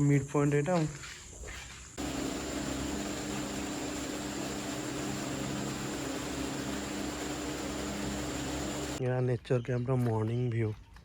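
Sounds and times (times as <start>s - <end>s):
faint high whine: 2.0s - 9.0s
hiss: 2.0s - 9.0s
steady machine hum: 2.0s - 9.0s.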